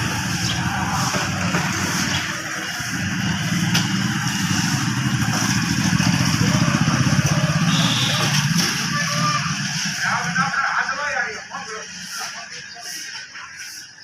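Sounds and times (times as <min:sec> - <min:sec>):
small engine throbbing: 0:00.0 - 0:10.3.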